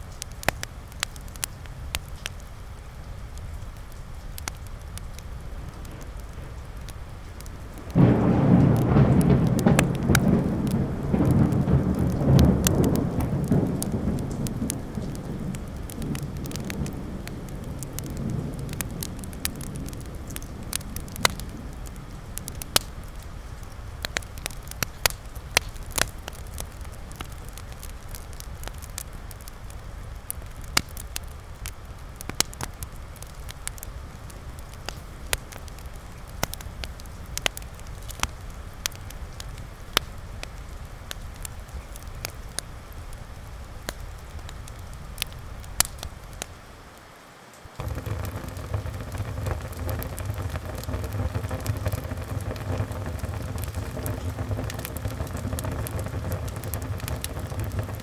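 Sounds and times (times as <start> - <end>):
wood fire crackling: 0.0 - 46.9, 47.6 - 58.0
rain hissing: 0.0 - 58.0
low thunder rumble: 5.2 - 24.6, 47.8 - 58.0.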